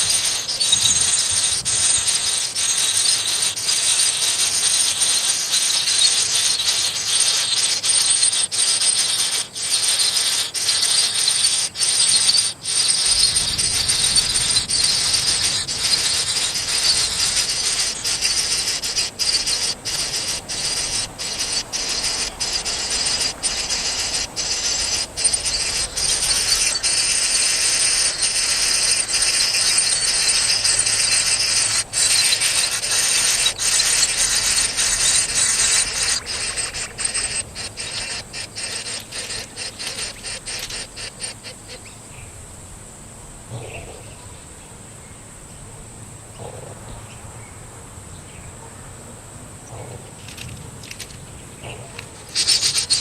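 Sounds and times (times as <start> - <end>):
insects buzzing chorus: 0.0 - 53.0
thin high whine: 11.4 - 41.4.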